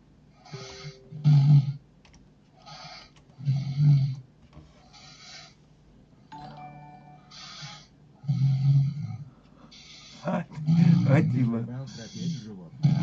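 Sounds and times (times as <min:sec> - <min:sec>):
hissing breath: 0:00.4 - 0:01.0, 0:07.3 - 0:08.0, 0:09.6 - 0:10.4
man snoring heavily: 0:00.5 - 0:01.8, 0:07.4 - 0:09.2, 0:09.8 - 0:13.0.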